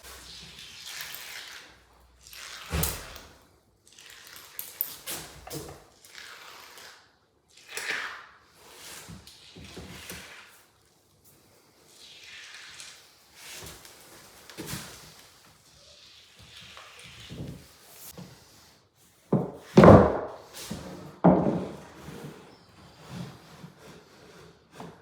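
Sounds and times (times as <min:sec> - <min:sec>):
boards knocking: 0:19.3 - 0:20.4, 0:21.0 - 0:21.9
boards scraping: 0:19.3 - 0:25.0.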